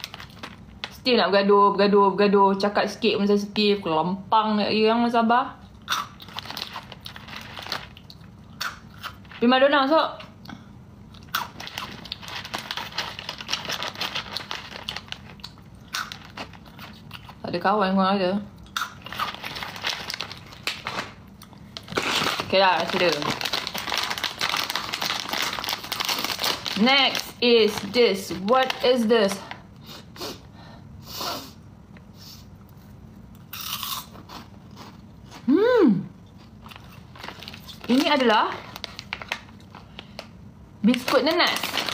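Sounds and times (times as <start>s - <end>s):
wrapper crackle: 0.0s - 1.0s, 5.9s - 9.4s, 11.3s - 17.4s, 18.8s - 29.6s, 36.6s - 41.9s
person chewing crunchy snack: 5.8s - 9.4s, 11.1s - 17.4s, 18.6s - 20.7s, 32.7s - 35.5s.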